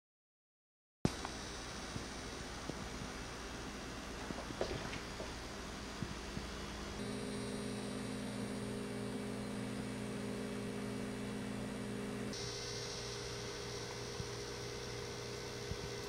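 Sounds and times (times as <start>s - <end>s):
steady electrical hum: 1.1s - 16.0s.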